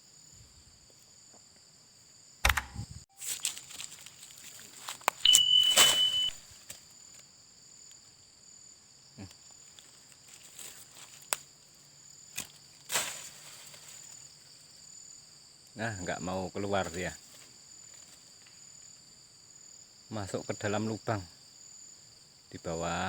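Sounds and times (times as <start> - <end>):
insects droning: 0.0 - 23.0
sharp rustles and crackles: 2.8 - 7.1
steady whistling tone: 5.3 - 6.4.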